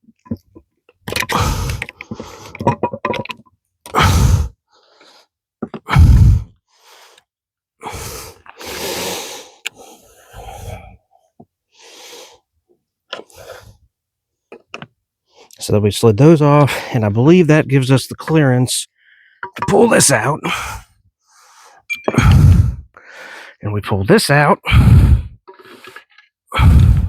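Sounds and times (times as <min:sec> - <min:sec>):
heavy effortful breaths: 0:01.3 - 0:02.7, 0:03.9 - 0:12.5, 0:20.4 - 0:23.6, 0:24.6 - 0:27.0.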